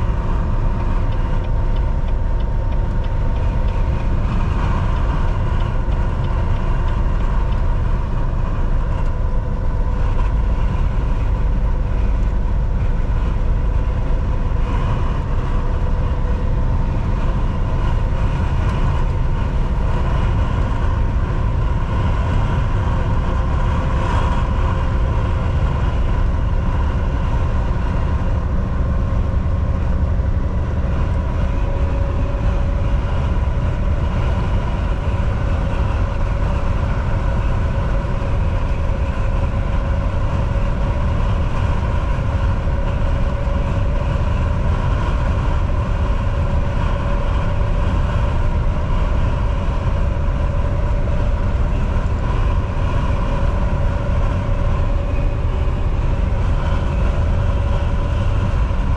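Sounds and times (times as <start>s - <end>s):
faint whine: 0.0s - 58.9s
truck engine and road noise: 0.0s - 58.9s.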